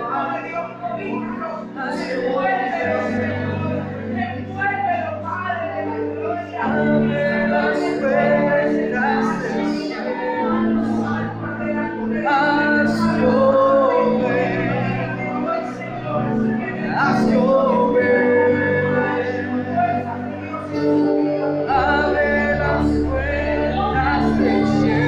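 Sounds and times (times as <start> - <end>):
keyboard and bass chords: 0.0 - 25.0
person singing worship song: 0.0 - 25.0.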